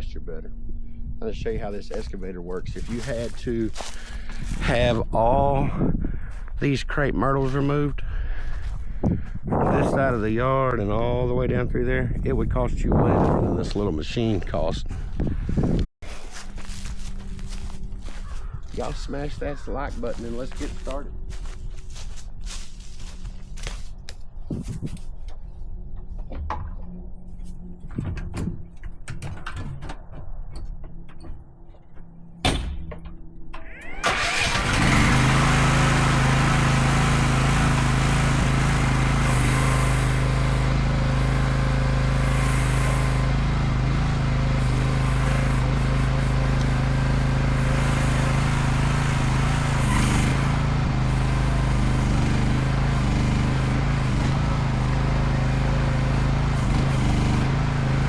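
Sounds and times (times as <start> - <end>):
excavator engine idling: 33.9 - 58.0.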